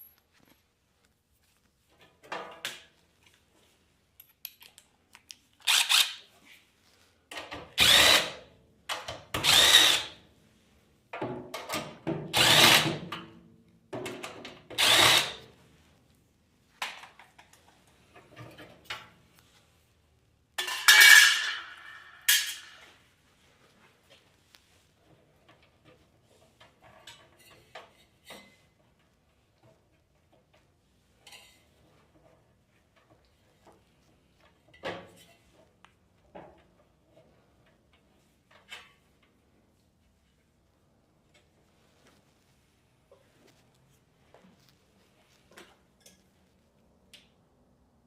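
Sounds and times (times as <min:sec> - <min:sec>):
power drill driver running: 0:05.6 - 0:06.2, 0:07.8 - 0:08.4, 0:09.4 - 0:10.1, 0:12.4 - 0:12.9, 0:14.8 - 0:15.4.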